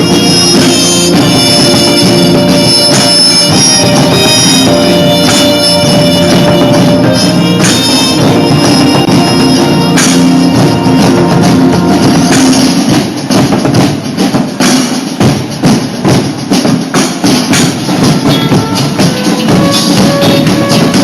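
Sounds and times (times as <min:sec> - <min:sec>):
marching drumline playing: 0:00.0 - 0:21.0
pitched music: 0:00.0 - 0:21.0.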